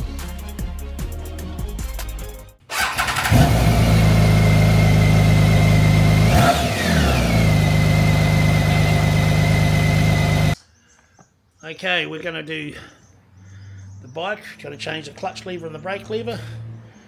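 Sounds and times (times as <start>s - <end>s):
motorcycle engine starting and idling: 2.7s - 10.6s.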